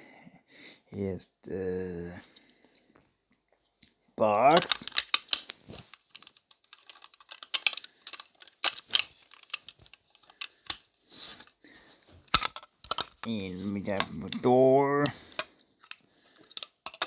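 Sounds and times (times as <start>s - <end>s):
plastic toy bricks clicking: 4.5s - 10.8s, 12.2s - 17.0s.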